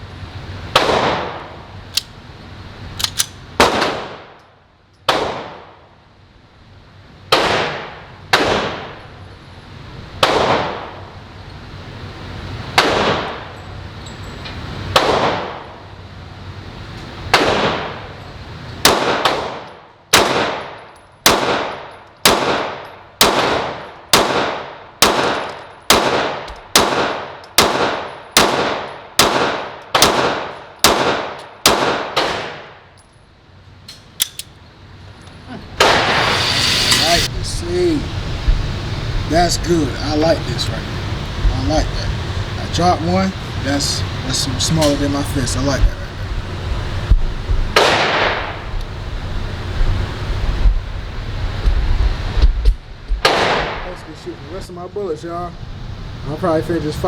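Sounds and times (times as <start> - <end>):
pistol shots echoing: 18.8 - 32.8.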